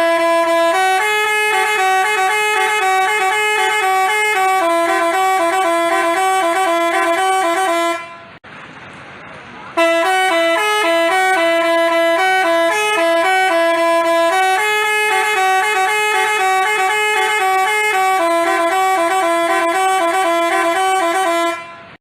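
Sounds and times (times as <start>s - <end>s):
multi-tone musical bus horn: 0.0s - 8.4s, 9.7s - 22.0s.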